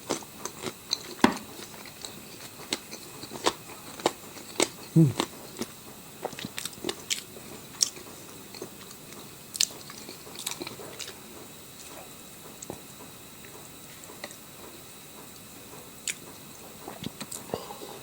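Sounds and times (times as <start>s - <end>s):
wet chewing clicks: 0.1s - 11.2s, 16.0s - 17.5s.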